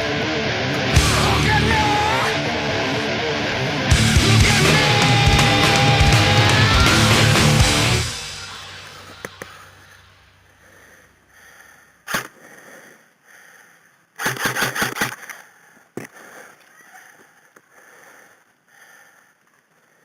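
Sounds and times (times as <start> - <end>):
airsoft gun firing: 14.2 - 15.3.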